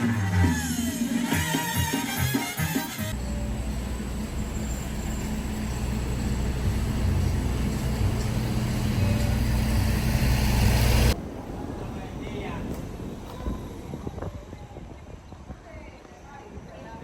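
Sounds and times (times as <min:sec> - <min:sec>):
engine running: 0:03.1 - 0:11.2.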